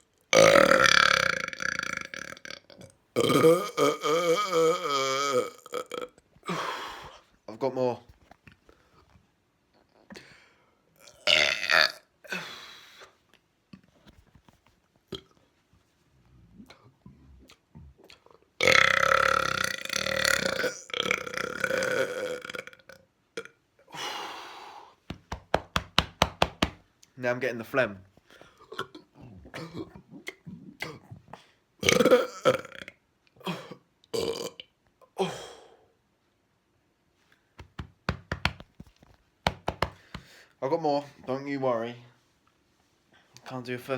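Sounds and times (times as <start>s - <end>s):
person burping: 0.3s - 6.8s, 11.0s - 12.5s, 18.6s - 23.6s, 28.7s - 31.2s, 31.8s - 35.8s
short sharp knocks: 39.4s - 40.3s.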